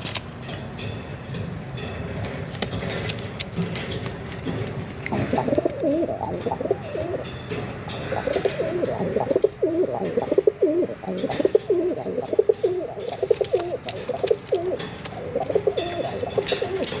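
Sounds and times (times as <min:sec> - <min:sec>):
pigeons cooing: 0:05.1 - 0:17.0.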